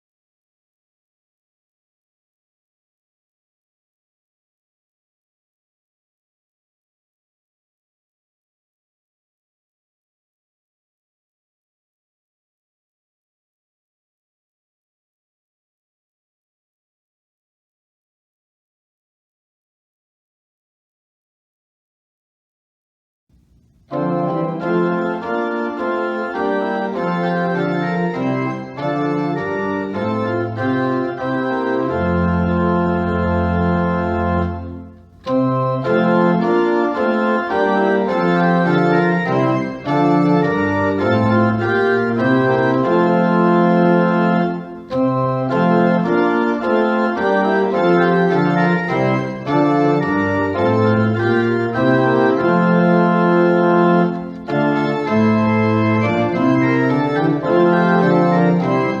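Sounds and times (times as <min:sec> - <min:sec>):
organ music: 0:23.7 - 0:59.0.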